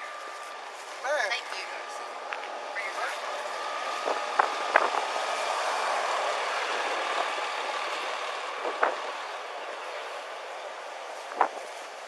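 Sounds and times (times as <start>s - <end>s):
steady vehicle noise: 0.0s - 12.0s.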